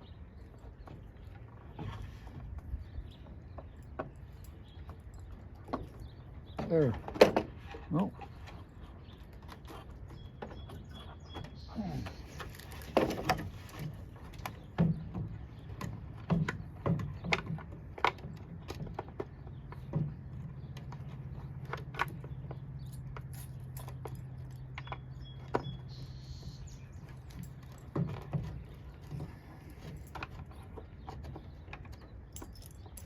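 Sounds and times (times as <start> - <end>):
small parts clicking and knocking: 31.8 - 33.0.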